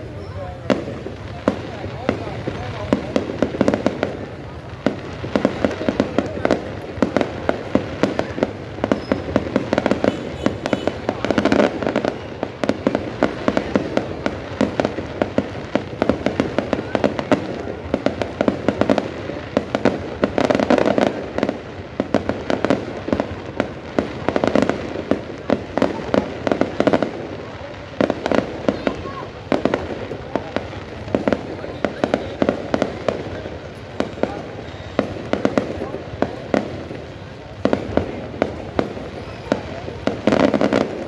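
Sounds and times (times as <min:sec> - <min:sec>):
fireworks bangs and crackling: 0:00.0 - 0:41.0.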